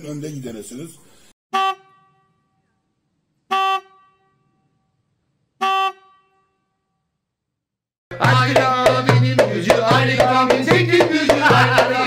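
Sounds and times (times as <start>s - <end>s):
car horn honking: 1.5s - 2.8s, 3.5s - 4.8s, 5.6s - 6.9s.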